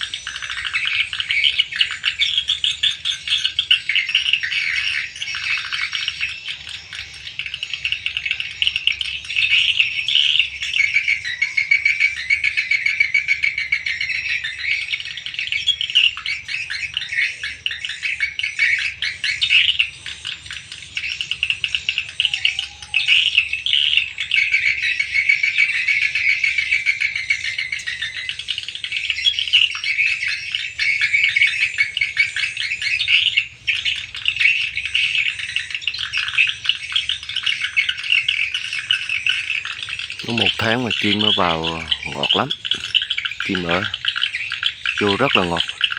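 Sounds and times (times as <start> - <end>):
swiftlets twittering: 39.2 - 45.9.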